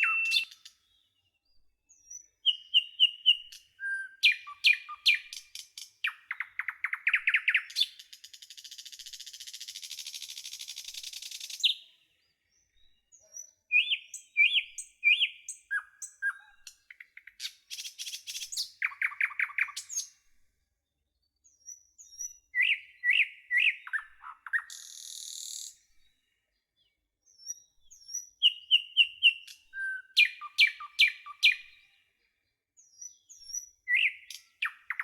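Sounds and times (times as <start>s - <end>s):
songbird singing: 0.0s - 35.0s.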